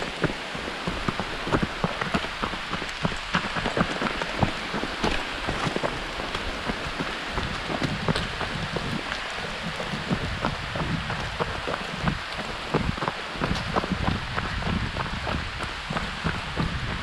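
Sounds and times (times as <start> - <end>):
rain hiss: 0.0 - 17.0
raindrops ticking: 0.0 - 17.0.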